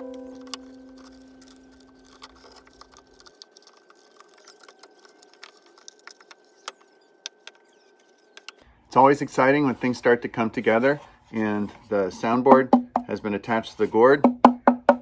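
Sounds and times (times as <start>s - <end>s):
ukulele chord ringing: 0.0s - 1.4s.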